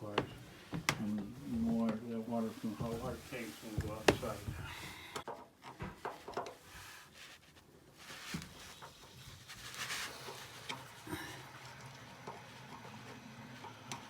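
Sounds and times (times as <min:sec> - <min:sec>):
soft water hiss: 0:02.0 - 0:05.1, 0:06.7 - 0:13.9
hands knocking and rubbing on valve: 0:02.7 - 0:04.7.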